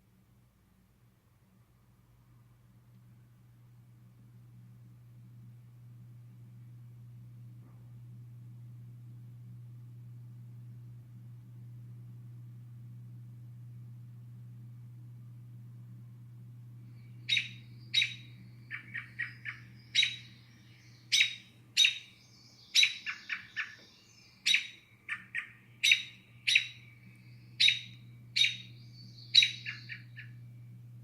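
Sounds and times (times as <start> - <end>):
low electrical hum: 0.0 - 31.0
recorded bird of prey calls: 17.1 - 30.4.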